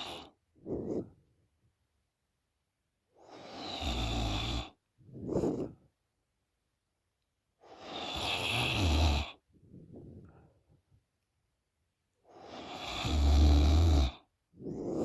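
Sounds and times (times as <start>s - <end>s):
woman snoring: 3.6s - 4.8s, 7.9s - 9.4s, 12.6s - 15.0s.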